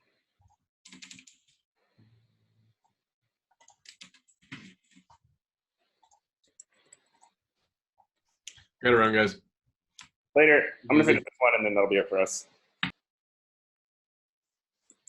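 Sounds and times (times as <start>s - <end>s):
keyboard typing and clicking: 0.9s - 1.5s, 3.6s - 5.2s.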